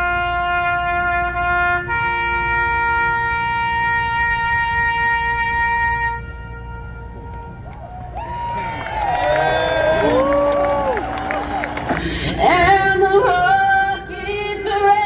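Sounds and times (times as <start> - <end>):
trumpet over public address: 0.0 - 7.9.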